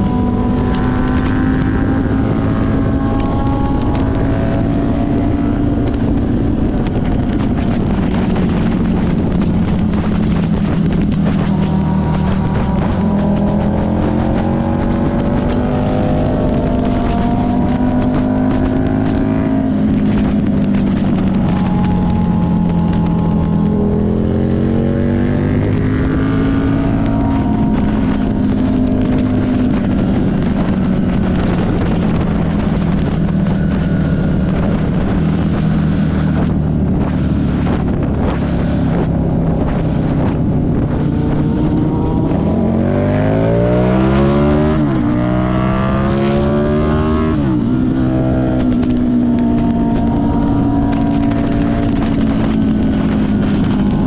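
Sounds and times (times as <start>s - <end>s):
motorcycle engine accelerating: 0.0s - 54.0s.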